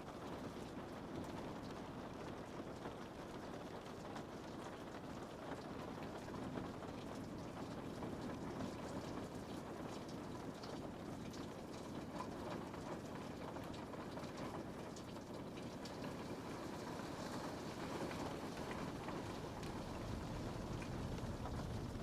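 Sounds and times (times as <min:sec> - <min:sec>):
rain ticking on window glass: 0:00.0 - 0:22.0
low rumble: 0:19.5 - 0:22.0.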